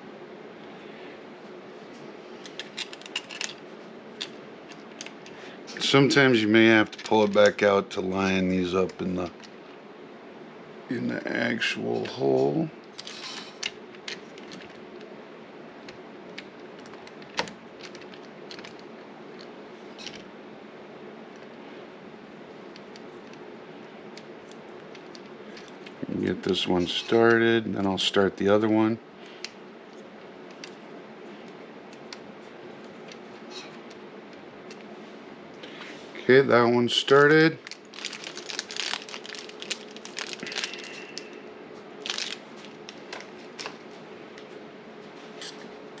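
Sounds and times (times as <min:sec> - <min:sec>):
low steady hiss: 0:03.4 - 0:13.0.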